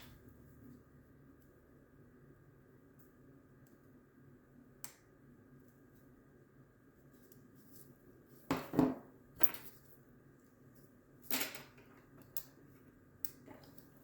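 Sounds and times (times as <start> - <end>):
small objects clattering on workbench: 11.3 - 12.5.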